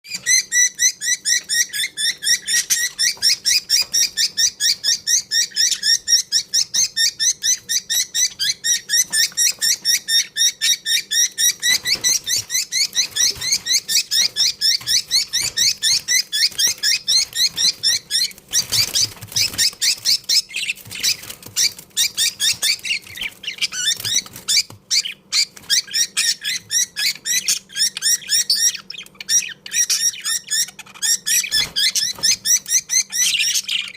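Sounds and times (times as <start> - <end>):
budgerigars chirping: 0.1 - 33.9.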